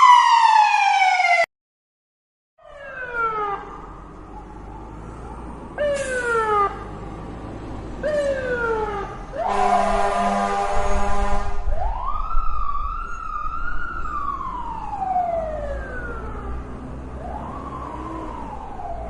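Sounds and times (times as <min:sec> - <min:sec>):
fire truck siren wailing: 0:00.0 - 0:01.5, 0:02.6 - 0:19.0
horn blast: 0:09.4 - 0:11.7.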